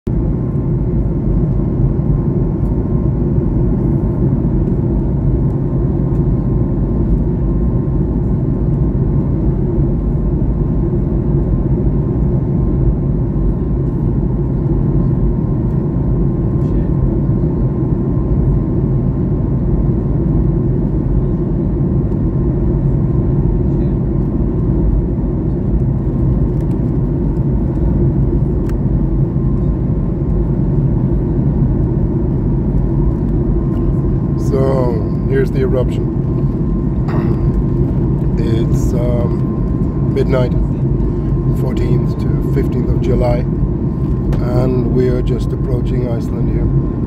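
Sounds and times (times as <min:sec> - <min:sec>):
aircraft cabin engine drone: 0:00.1 - 0:47.0
faint high hum: 0:00.2 - 0:47.0.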